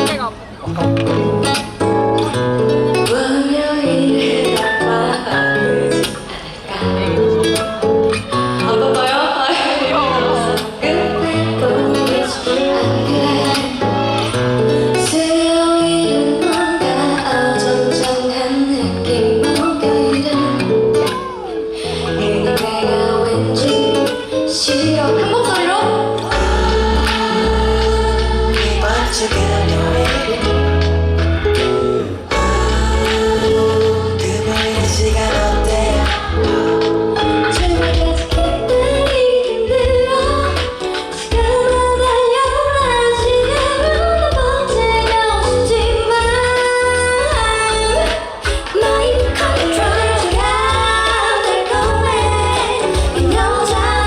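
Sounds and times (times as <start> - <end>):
pop music with guitar and bass: 0.0 - 54.0
person singing: 8.2 - 31.0, 32.1 - 54.0.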